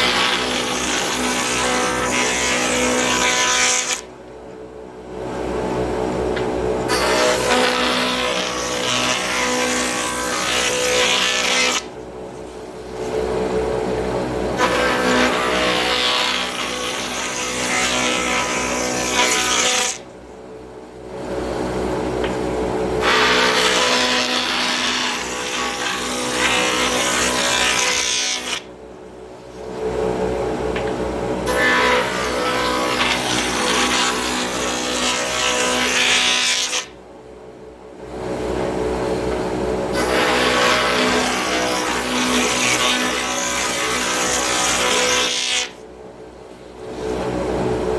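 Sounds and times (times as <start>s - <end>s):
wood router whining and cutting: 0.0s - 4.1s, 6.9s - 12.0s, 13.2s - 20.1s, 22.6s - 28.8s, 29.8s - 37.0s, 39.8s - 45.8s.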